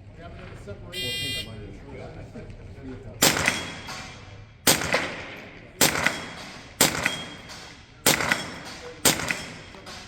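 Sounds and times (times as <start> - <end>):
rifle shots: 3.2 - 9.9.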